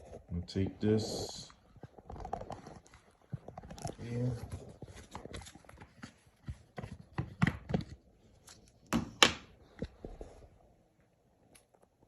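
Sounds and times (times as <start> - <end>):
kitchen items tapping and knocking: 6.5 - 8.0.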